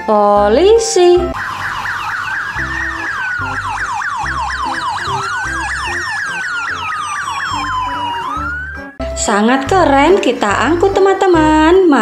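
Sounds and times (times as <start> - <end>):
police siren yelping and wailing: 0.8 - 9.0.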